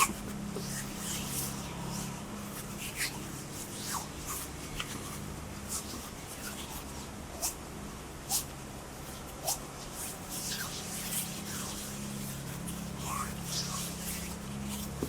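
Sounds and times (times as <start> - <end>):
hands rubbing together: 9.1 - 15.0.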